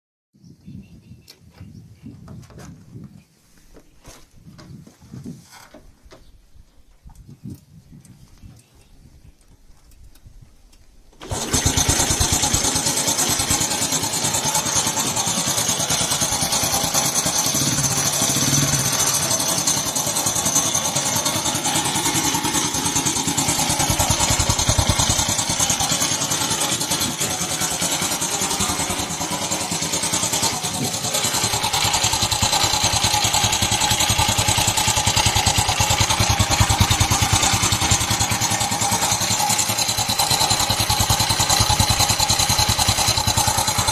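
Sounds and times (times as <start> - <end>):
abnormal engine noise: 11.2 - 43.9
motorcycle engine running: 11.2 - 43.9.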